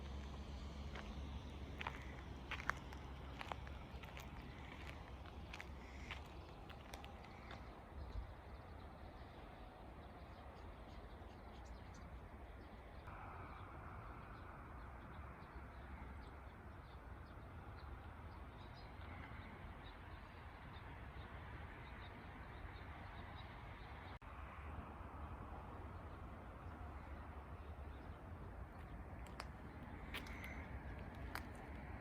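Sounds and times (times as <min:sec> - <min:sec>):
small birds chirping: 0:00.0 - 0:09.3, 0:27.8 - 0:31.9
low wind rumble: 0:00.0 - 0:18.5.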